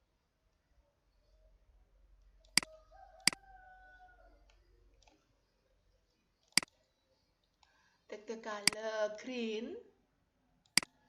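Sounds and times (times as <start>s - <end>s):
computer mouse clicks: 10.6s - 11.0s.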